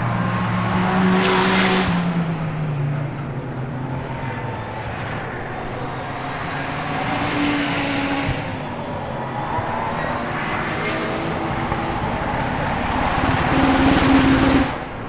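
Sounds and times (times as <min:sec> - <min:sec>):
race cars passing at high revs: 0:00.0 - 0:15.0.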